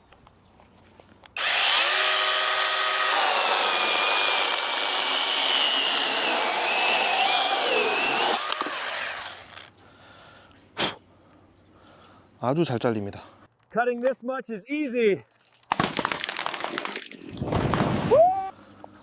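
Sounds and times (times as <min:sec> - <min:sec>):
chainsaw cutting through log: 0:01.4 - 0:09.7
cordless chainsaw motor whine: 0:01.4 - 0:09.7.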